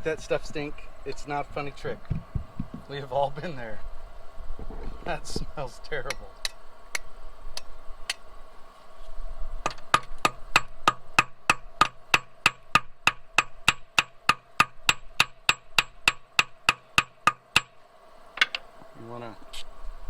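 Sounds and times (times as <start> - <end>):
hammer tapping on metal: 9.7 - 17.7.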